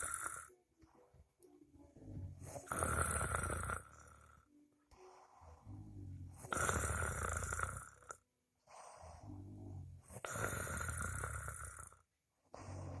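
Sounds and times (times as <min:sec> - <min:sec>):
person snoring: 0:00.0 - 0:00.6, 0:02.3 - 0:04.5, 0:05.4 - 0:13.0.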